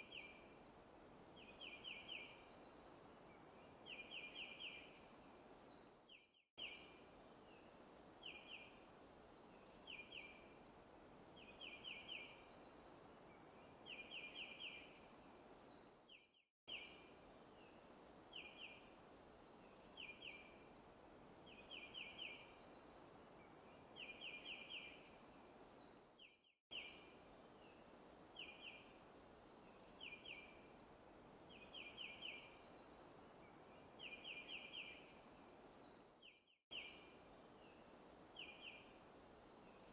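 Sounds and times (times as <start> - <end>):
soft steady hiss: 0.0 - 16.1, 16.7 - 39.9.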